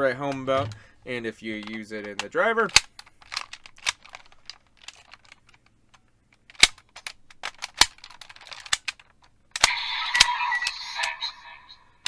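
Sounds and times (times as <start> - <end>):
plastic clicks and snaps: 1.5 - 11.2
toy electronic sound effect: 9.6 - 11.9.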